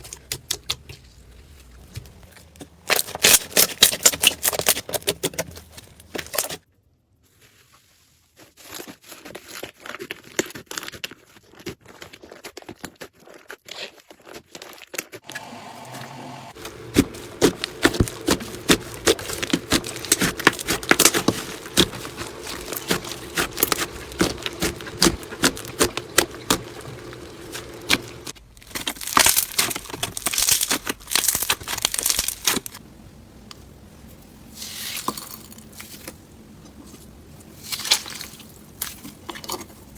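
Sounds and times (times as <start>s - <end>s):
slime crackling and popping: 16.6s - 32.8s.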